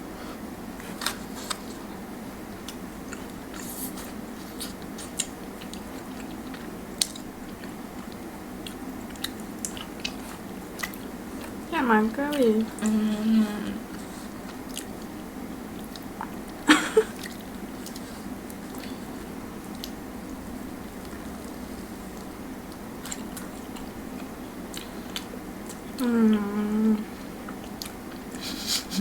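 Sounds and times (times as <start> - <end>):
steady low hum: 0.0 - 29.0
chewing a sandwich: 0.3 - 11.7, 13.8 - 26.4, 27.2 - 28.7
person humming: 12.4 - 13.9, 26.0 - 27.2, 28.4 - 29.0.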